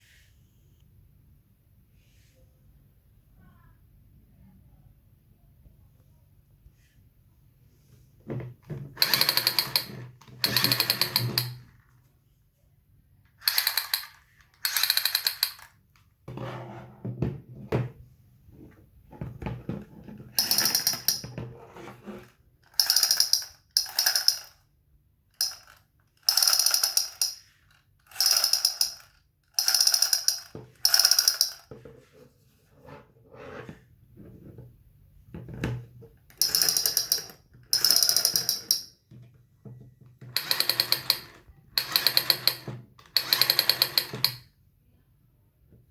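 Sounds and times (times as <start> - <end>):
toy pistol rattling bursts: 9.0 - 11.6, 13.4 - 15.8, 20.4 - 21.2, 22.6 - 24.6, 25.3 - 31.7, 36.4 - 38.9, 40.4 - 44.4.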